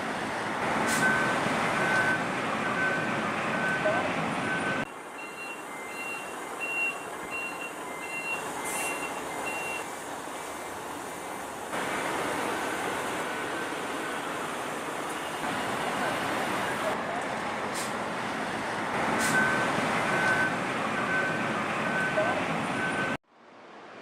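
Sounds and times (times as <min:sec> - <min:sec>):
engine and port noise: 0:00.0 - 0:24.0
reversing alarm beeping: 0:01.0 - 0:09.9, 0:19.3 - 0:23.2
two-pitch alternating beep: 0:01.9 - 0:09.8.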